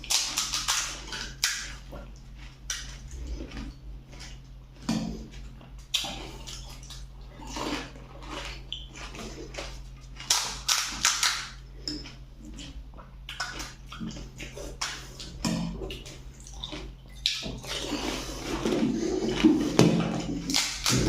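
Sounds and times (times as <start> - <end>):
crisp food crunching: 0.0 - 21.0.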